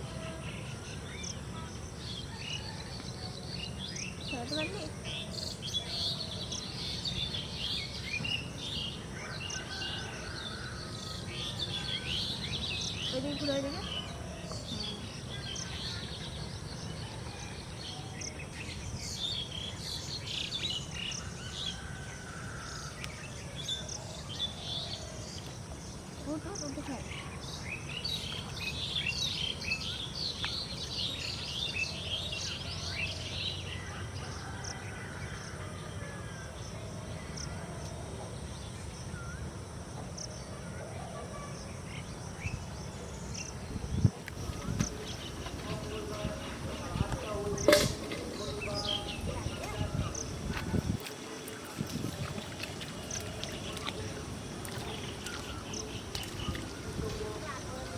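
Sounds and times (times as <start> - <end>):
birds chirping: 41.2 - 57.9.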